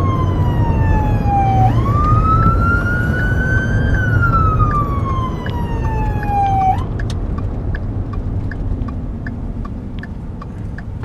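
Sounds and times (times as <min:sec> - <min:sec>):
emergency vehicle wail siren: 0:00.0 - 0:07.1
engine and road rumble: 0:00.0 - 0:11.0
light regular ticking: 0:03.8 - 0:11.0.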